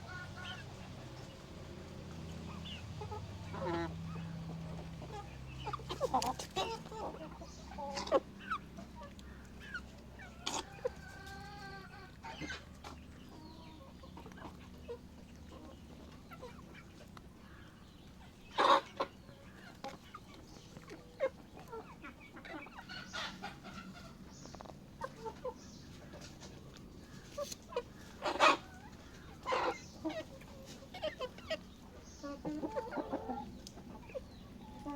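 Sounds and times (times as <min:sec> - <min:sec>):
chickens clucking: 0:00.0 - 0:34.9
chicken loud calls: 0:27.0 - 0:34.9.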